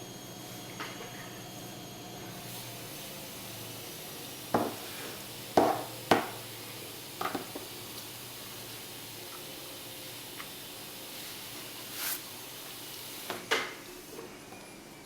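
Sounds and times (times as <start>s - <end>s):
knocks of hard objects: 5.6s - 6.4s.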